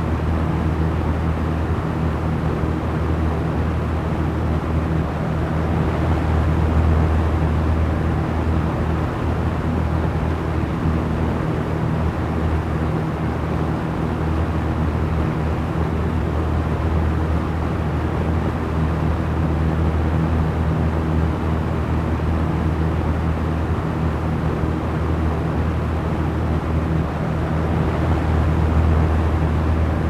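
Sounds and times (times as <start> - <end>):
electric fan running: 0.0 - 30.0.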